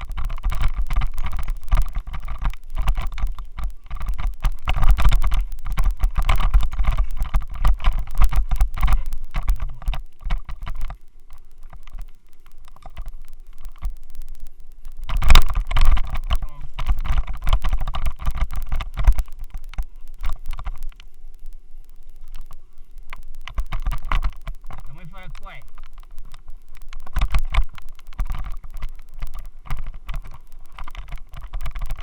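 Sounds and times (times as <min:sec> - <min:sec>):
helmet mount rattling and buzzing: 0:00.0 - 0:14.0, 0:14.9 - 0:21.1, 0:22.2 - 0:32.0.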